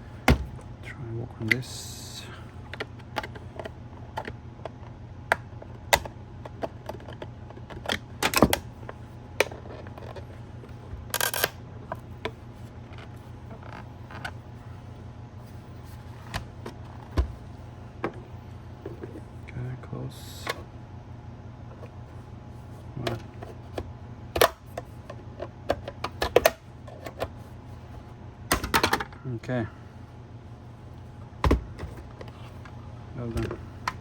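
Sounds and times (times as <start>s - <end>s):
low steady hum: 0.0s - 34.0s.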